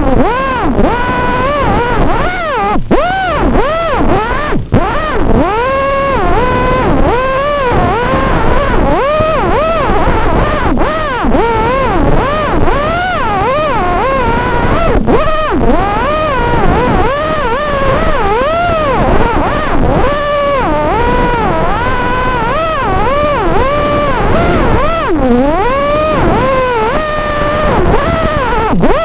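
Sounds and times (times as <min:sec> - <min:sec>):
quadcopter motors whining: 0:00.0 - 0:29.0.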